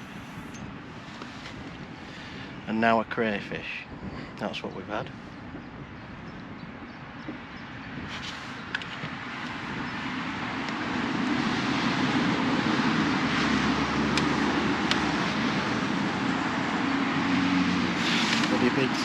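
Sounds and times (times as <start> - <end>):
passing motor vehicle engine: 10.2 - 19.0.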